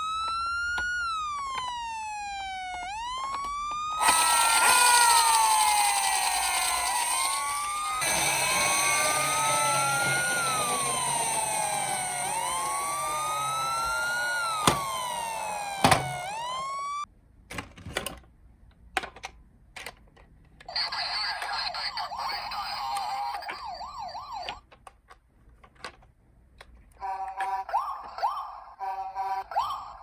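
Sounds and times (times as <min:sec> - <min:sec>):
toy clicks: 0:00.0 - 0:16.8, 0:20.6 - 0:25.2
fast warbling electronic siren: 0:00.0 - 0:17.1, 0:21.9 - 0:24.6
toy electronic siren wailing: 0:00.0 - 0:17.1, 0:20.7 - 0:24.6, 0:27.0 - 0:30.0.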